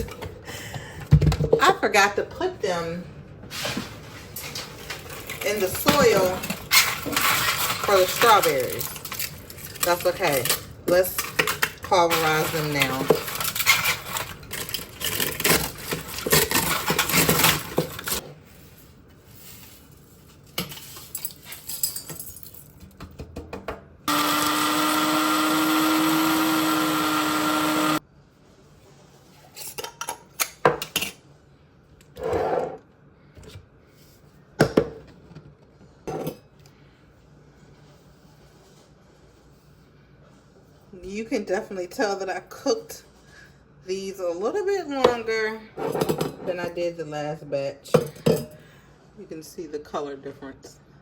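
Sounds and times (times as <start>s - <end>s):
electric blender running: 24.1s - 28.0s.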